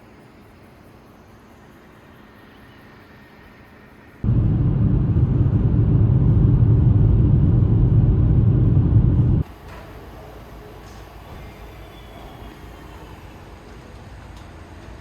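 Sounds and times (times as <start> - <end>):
low vehicle rumble: 4.2 - 9.5.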